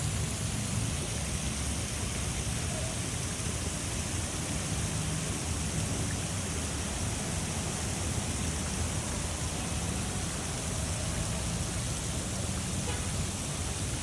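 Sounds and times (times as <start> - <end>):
rushing falling water: 0.0 - 14.0.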